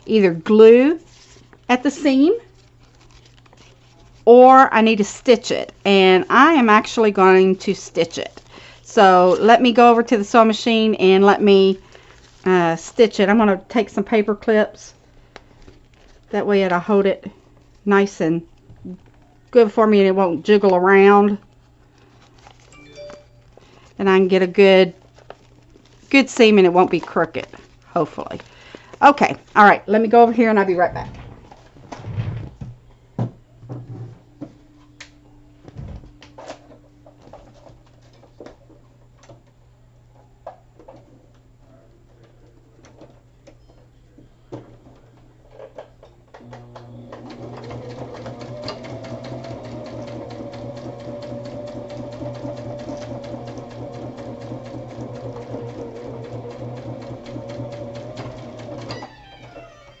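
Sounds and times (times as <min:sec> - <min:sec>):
sewing machine stitching: 0:46.4 - 1:00.0.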